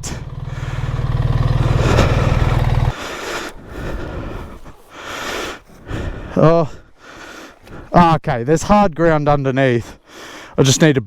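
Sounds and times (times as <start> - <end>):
motorcycle engine running: 0.0 - 4.4.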